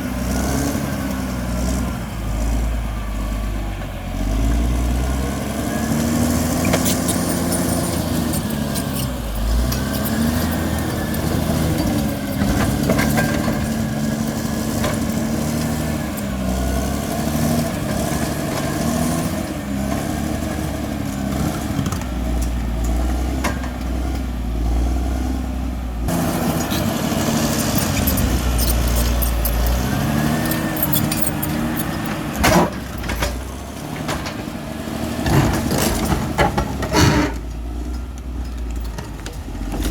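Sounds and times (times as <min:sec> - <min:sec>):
bulldozer diesel engine working: 0:00.0 - 0:39.9
metal clanks: 0:06.6 - 0:13.8, 0:26.5 - 0:34.5.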